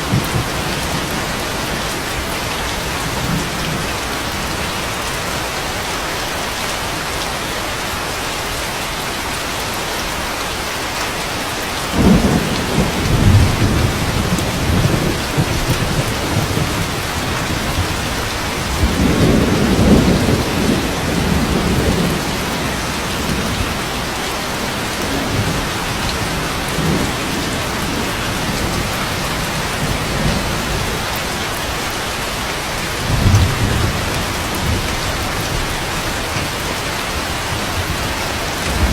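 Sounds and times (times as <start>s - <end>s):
thunder rumbling: 0.0s - 4.6s, 11.9s - 31.8s, 32.8s - 38.9s
steady rain: 0.0s - 38.9s.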